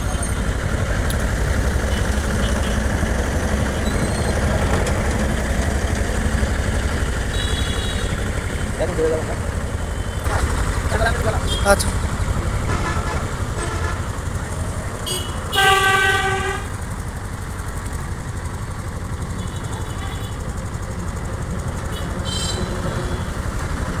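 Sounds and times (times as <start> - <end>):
heavy machinery engines running: 0.0 - 24.0
vehicle horn blast: 1.7 - 3.1, 7.2 - 8.4, 11.3 - 11.9, 12.6 - 14.3, 15.0 - 16.9, 21.9 - 23.4.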